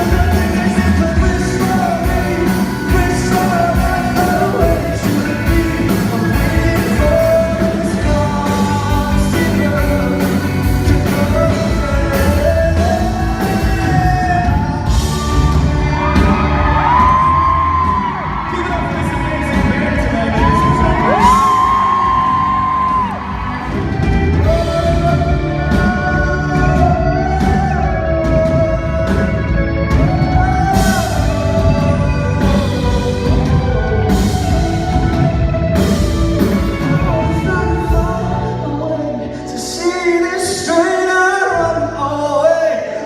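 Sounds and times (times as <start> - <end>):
drums: 0.0 - 43.0
man singing with rock band: 0.0 - 43.0
audience yelling and whooping: 13.4 - 38.1.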